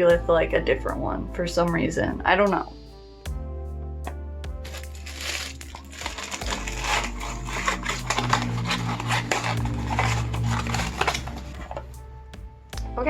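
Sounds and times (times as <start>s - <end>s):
cardboard boxes rustling and scraping: 4.6s - 11.9s.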